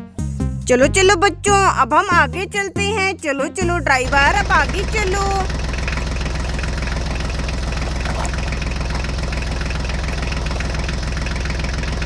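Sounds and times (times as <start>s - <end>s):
tractor diesel engine chugging: 3.6s - 12.0s.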